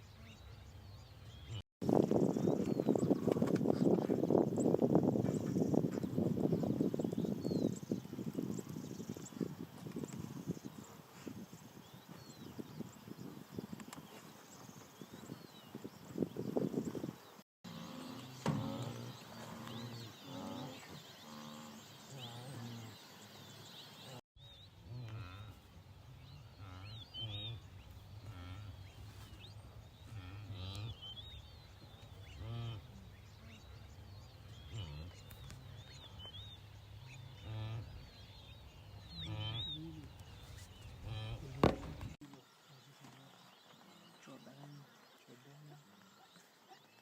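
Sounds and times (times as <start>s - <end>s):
bird chirps: 13.6s - 47.0s.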